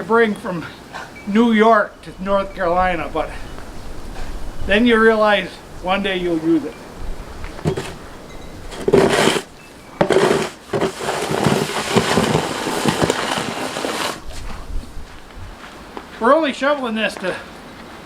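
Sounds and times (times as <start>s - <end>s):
snow shovel scraping: 7.6s - 8.0s, 8.7s - 14.3s.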